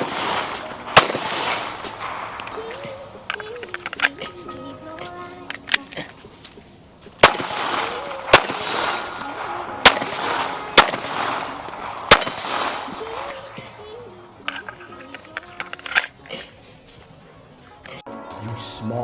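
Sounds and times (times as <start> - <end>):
pistol shots with echo: 0.0 - 4.0, 7.2 - 14.7.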